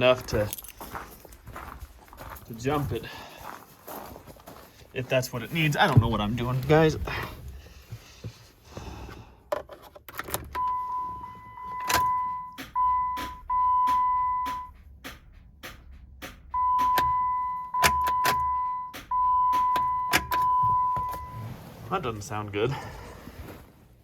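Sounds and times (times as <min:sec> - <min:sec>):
high-pitched electronic beep: 0:10.6 - 0:14.8, 0:16.6 - 0:21.4
rapid irregular electrical clicking: 0:12.5 - 0:17.1, 0:18.9 - 0:20.4.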